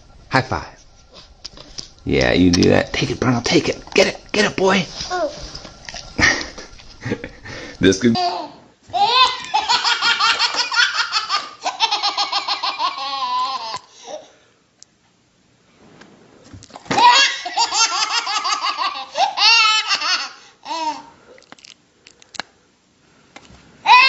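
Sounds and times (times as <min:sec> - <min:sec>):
baby laughing: 0:08.2 - 0:14.2, 0:16.9 - 0:21.1.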